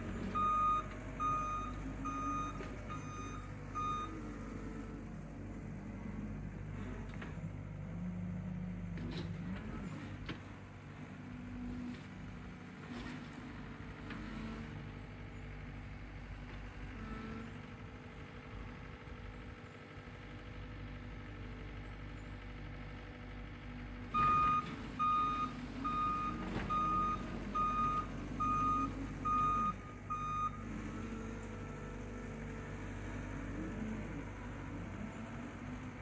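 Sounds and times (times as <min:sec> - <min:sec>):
reversing alarm beeping: 0:00.4 - 0:04.2, 0:24.2 - 0:30.6.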